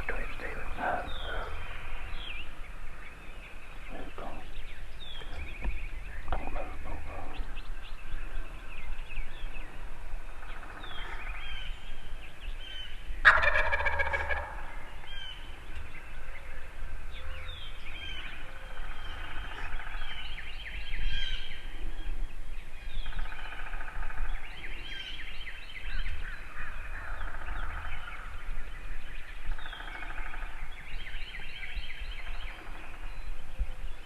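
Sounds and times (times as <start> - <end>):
small birds chirping: 0.0 - 34.0
turkey gobbling: 13.2 - 14.7.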